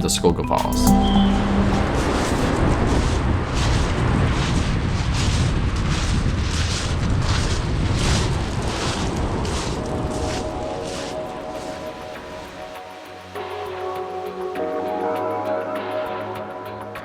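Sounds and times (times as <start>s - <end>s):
wind rumbling on microphone: 2.0s - 12.5s.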